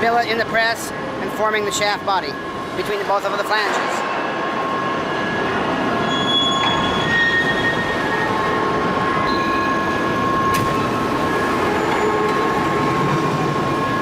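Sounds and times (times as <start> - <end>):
thin high squealing tones: 4.7 - 13.2.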